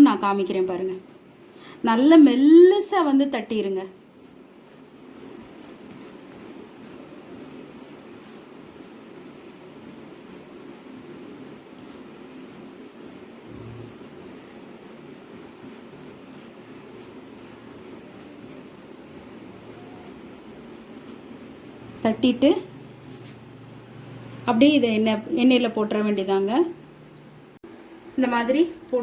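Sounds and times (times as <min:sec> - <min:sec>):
steady low hum: 0:03.4 - 0:25.6.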